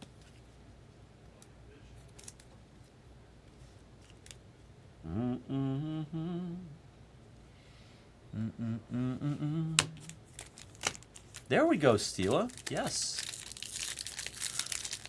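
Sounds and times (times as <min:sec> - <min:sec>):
man humming: 0:05.0 - 0:06.9, 0:08.3 - 0:10.2, 0:11.5 - 0:13.2.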